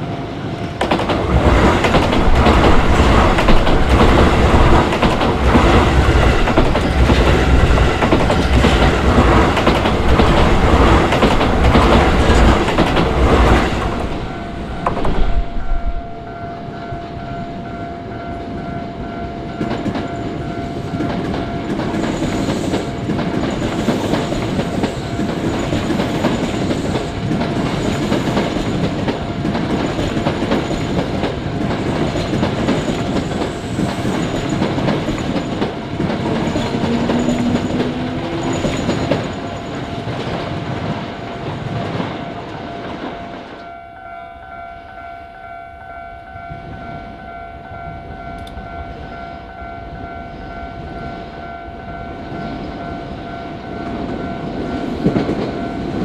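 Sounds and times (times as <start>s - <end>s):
crossing warning bell ringing: 0.4s - 56.0s
train wheels clacking over rail joints: 0.8s - 17.6s, 19.6s - 43.7s.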